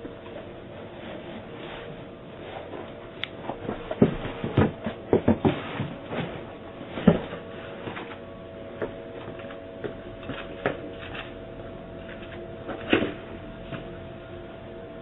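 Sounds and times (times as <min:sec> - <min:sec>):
objects knocking and clattering: 0:03.5 - 0:08.2.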